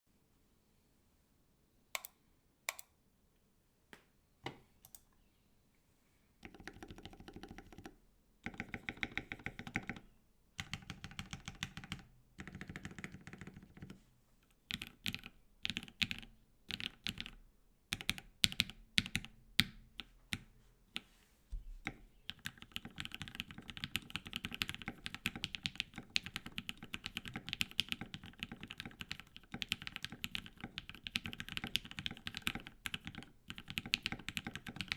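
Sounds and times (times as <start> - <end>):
typing on mechanical keyboard: 6.4 - 14.0, 14.7 - 20.4, 21.8 - 34.9.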